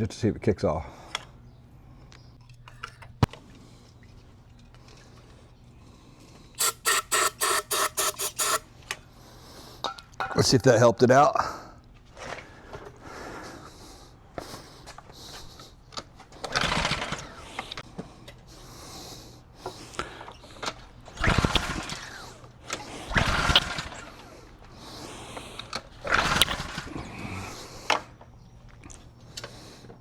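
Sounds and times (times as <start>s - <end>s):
engine recoil starter cranking: 6.6s - 8.7s, 16.4s - 17.8s, 21.1s - 24.4s, 25.6s - 27.0s.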